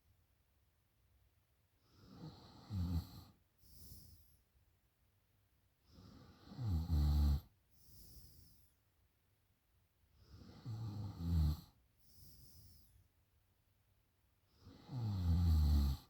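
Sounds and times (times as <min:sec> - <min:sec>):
woman snoring: 0:02.0 - 0:03.3, 0:06.0 - 0:07.5, 0:10.4 - 0:11.7, 0:14.6 - 0:16.0.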